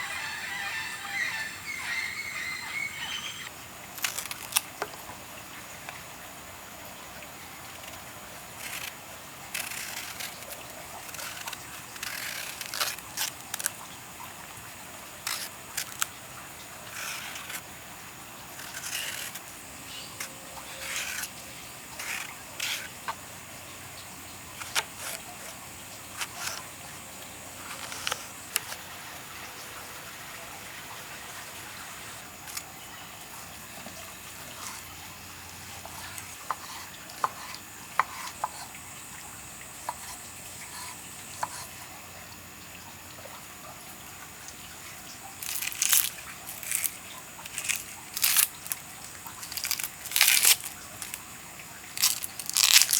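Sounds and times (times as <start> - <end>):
knife scraping and clicking: 7.7 - 13.8, 15.2 - 16.1, 16.9 - 17.7, 18.5 - 23.2, 24.6 - 28.8, 32.4 - 32.7, 35.8 - 38.8, 45.4 - 51.2.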